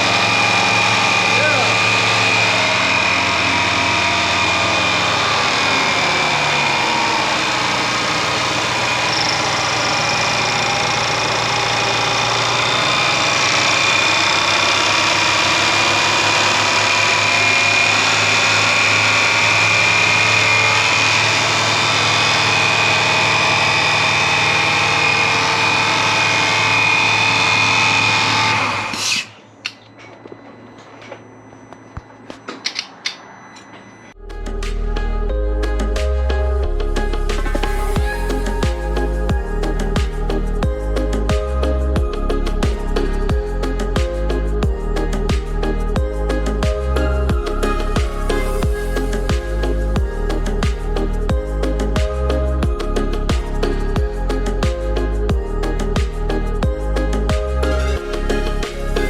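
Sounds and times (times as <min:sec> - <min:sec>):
car engine idling: 0:00.0 - 0:28.9
steady high whine: 0:00.0 - 0:59.0.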